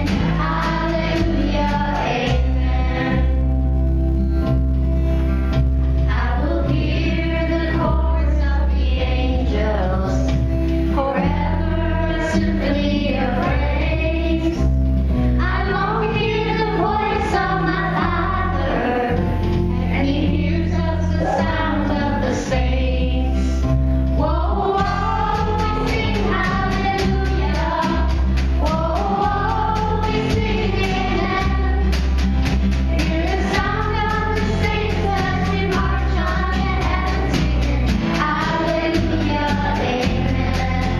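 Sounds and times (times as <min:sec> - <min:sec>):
choir singing: 0:00.0 - 0:03.4, 0:15.4 - 0:19.2, 0:20.0 - 0:23.3, 0:24.2 - 0:32.1, 0:32.9 - 0:40.9
long held low bass notes: 0:00.0 - 0:40.9
instrumental accompaniment: 0:23.4 - 0:40.9.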